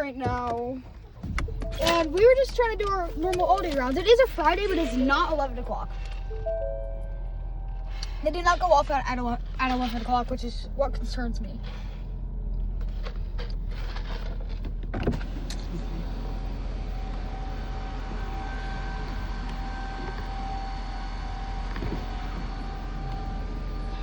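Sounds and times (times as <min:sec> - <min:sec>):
constant low hum: 0:00.0 - 0:24.0
warning siren steady tone: 0:03.1 - 0:09.6, 0:16.1 - 0:24.0.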